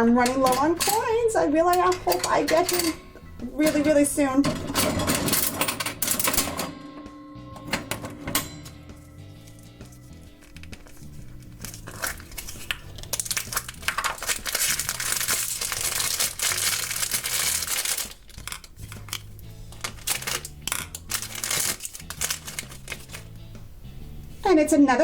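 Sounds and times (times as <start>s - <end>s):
background music: 0.0s - 25.0s
plastic wrapper crinkling: 9.4s - 23.4s.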